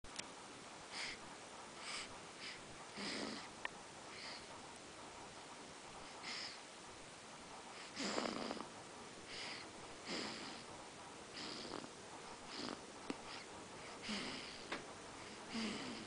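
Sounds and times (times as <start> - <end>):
baby snoring: 1.9 - 3.5, 6.2 - 6.6, 7.8 - 8.7, 9.3 - 10.7, 11.3 - 14.7, 15.5 - 16.0.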